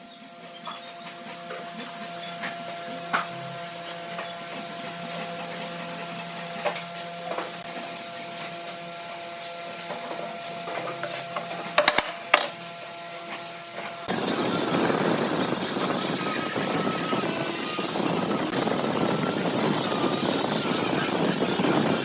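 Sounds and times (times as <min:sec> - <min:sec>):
steady machine hum: 0:10.6 - 0:22.0.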